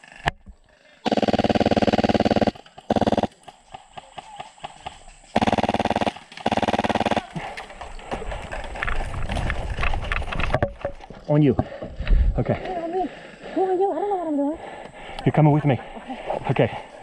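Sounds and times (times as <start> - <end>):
airsoft gun firing bursts: 1.0 - 7.5.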